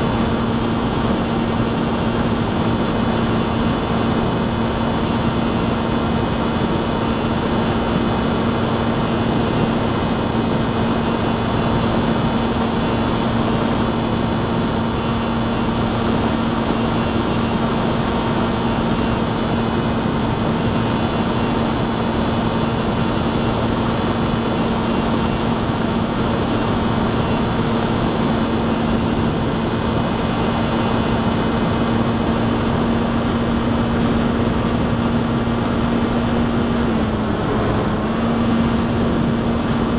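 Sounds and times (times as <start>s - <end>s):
faint high beep: 0.0s - 0.4s, 1.1s - 2.3s, 3.1s - 4.2s, 5.0s - 6.1s, 7.0s - 8.0s, 8.9s - 10.0s, 10.9s - 12.0s, 12.8s - 13.9s, 14.7s - 15.8s, 16.6s - 17.8s, 18.6s - 19.7s, 20.6s - 21.6s, 22.5s - 23.6s, 24.4s - 25.5s, 26.4s - 27.5s, 28.3s - 29.4s, 30.2s - 31.4s, 32.1s - 39.9s
electric motor and propeller humming: 0.0s - 39.9s.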